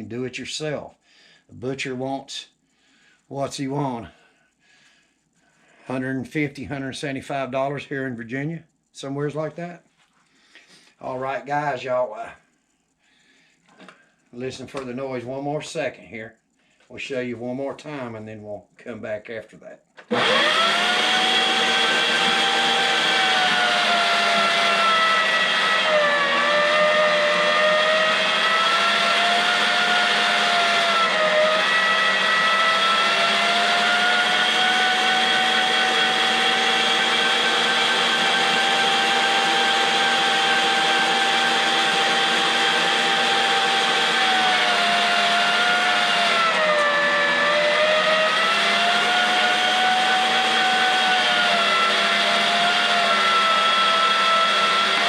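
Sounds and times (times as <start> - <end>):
electric meat grinder whining: 20.0 - 55.0.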